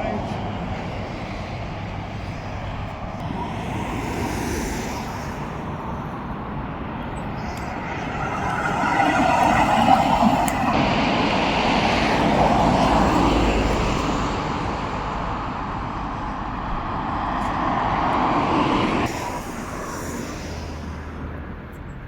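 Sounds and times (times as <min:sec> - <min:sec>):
passing vehicle traffic: 0:00.0 - 0:21.7.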